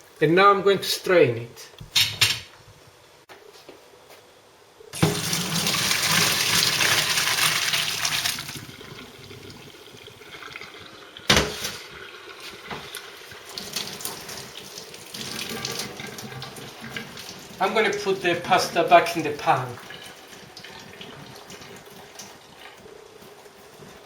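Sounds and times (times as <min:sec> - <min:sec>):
water draining and trickling: 0:05.0 - 0:18.2, 0:19.5 - 0:22.8
water pouring into a colander: 0:05.0 - 0:18.4, 0:19.3 - 0:23.7.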